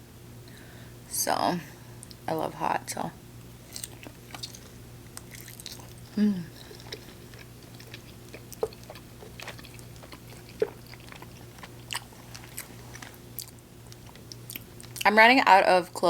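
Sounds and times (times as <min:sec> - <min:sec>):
crisp chewing: 0:03.4 - 0:15.0
person humming: 0:06.1 - 0:06.8.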